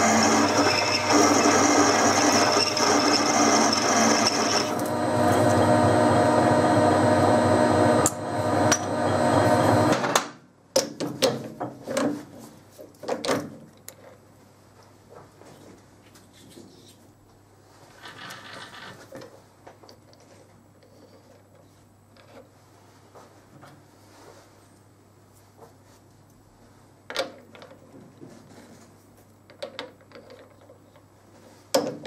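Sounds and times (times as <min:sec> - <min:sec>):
metal lathe running: 0:00.0 - 0:09.9.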